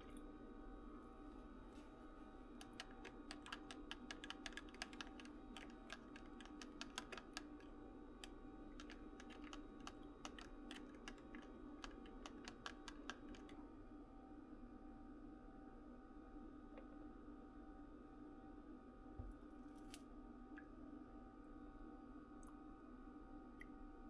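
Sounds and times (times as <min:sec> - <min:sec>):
steady hum: 0:00.0 - 0:14.8.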